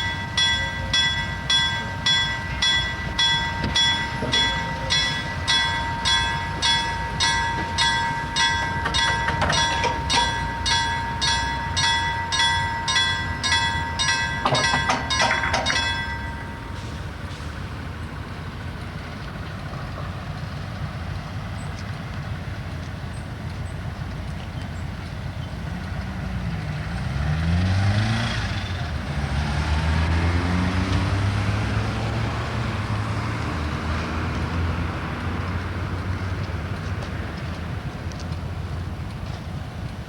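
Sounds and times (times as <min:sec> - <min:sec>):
freight train rumbling: 0:00.0 - 0:40.0
locomotive engine revving: 0:25.8 - 0:35.4.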